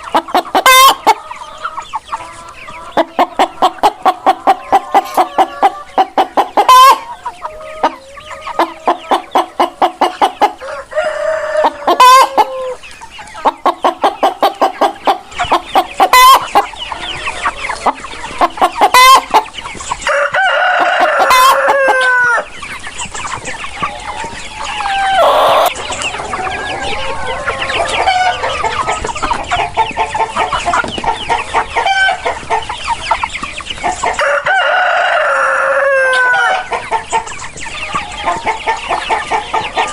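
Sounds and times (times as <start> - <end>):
chickens clucking: 0.0 - 39.9
rooster crowing: 10.5 - 12.8, 20.1 - 22.5, 23.8 - 28.7, 34.2 - 36.7.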